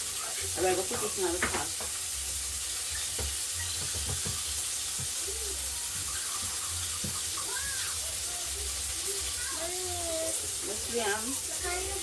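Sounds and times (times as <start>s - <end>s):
chicken sizzling in frying oil: 0.0s - 12.0s.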